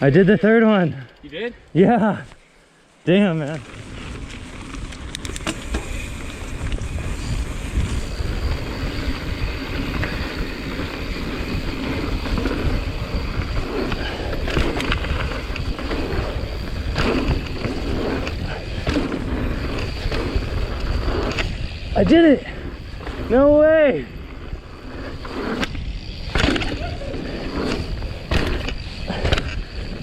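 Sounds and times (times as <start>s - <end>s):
bike tyre rumble on dirt: 3.0s - 30.0s
bike knocks and rattles: 3.6s - 21.8s, 25.6s - 30.0s
wind on microphone: 3.8s - 30.0s.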